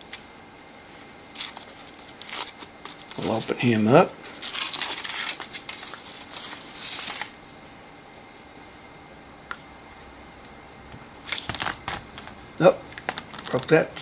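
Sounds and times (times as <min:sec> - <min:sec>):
foil wrapper crinkling and tearing: 0:00.0 - 0:07.4, 0:11.2 - 0:13.7.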